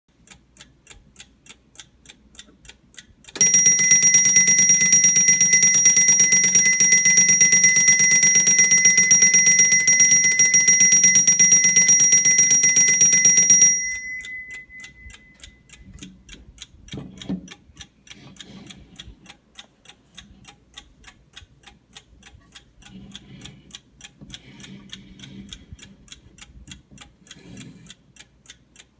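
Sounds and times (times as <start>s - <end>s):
clock ticking: 0.1s - 28.9s
alarm bells ringing: 3.4s - 15.4s.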